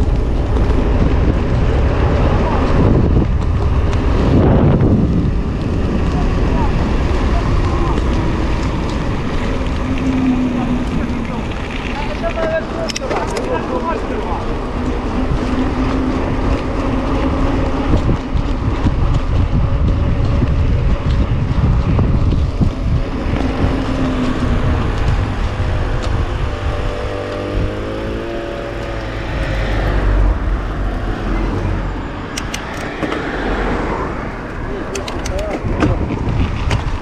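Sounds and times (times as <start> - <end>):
wind buffeting microphone: 0.0 - 37.0
wavering hum: 21.2 - 35.0.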